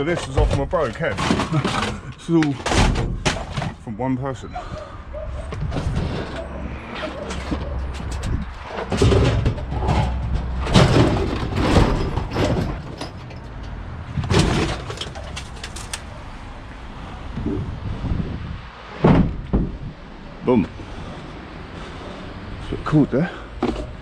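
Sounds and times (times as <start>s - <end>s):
scrap metal clattering: 0.0s - 3.9s, 5.5s - 16.1s.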